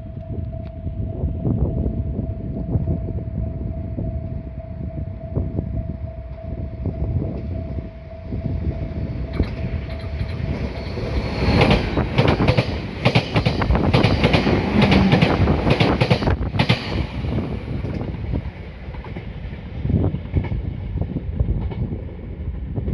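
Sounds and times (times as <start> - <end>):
train wheels clacking over rail joints: 9.3 - 18.2.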